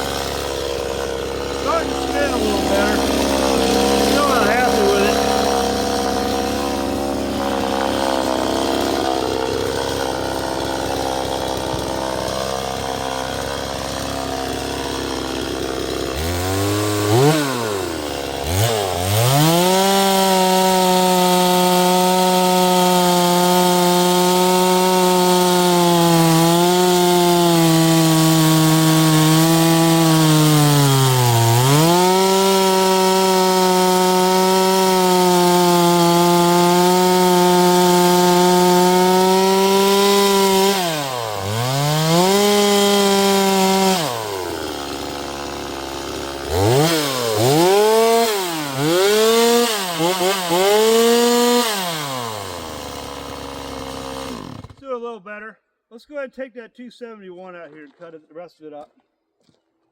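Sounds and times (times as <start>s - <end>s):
chainsaw cutting wood: 0.0s - 54.9s
man talking: 1.6s - 5.4s, 54.8s - 58.9s.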